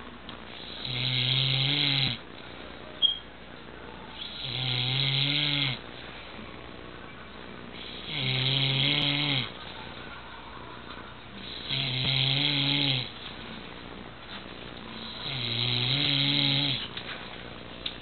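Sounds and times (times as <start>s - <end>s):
man snoring: 0.6s - 2.2s, 4.2s - 5.8s, 7.8s - 9.6s, 11.4s - 13.1s, 15.0s - 16.9s.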